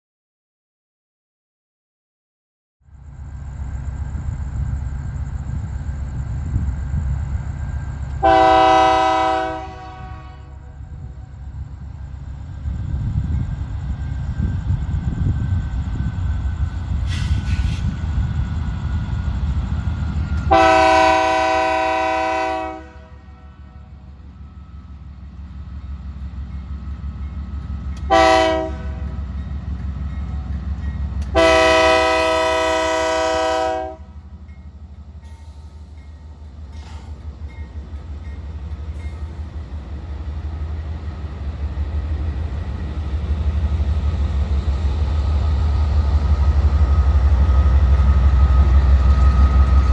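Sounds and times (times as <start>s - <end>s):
diesel locomotive engines rumbling: 2.8s - 49.9s
locomotive air horn blasts: 8.2s - 10.7s, 20.5s - 23.9s, 28.0s - 29.2s, 31.2s - 34.1s.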